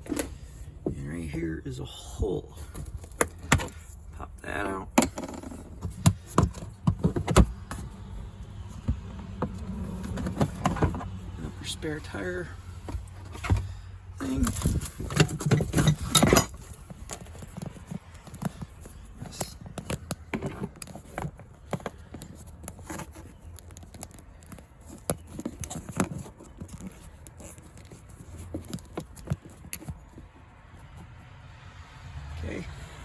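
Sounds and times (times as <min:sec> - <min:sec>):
tools clicking and clanking: 0:13.0 - 0:30.2.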